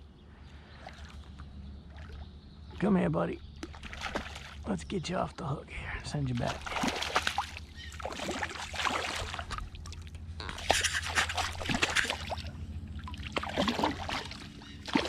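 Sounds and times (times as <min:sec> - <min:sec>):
water splashing and dripping: 0:03.6 - 0:04.7, 0:06.2 - 0:15.0.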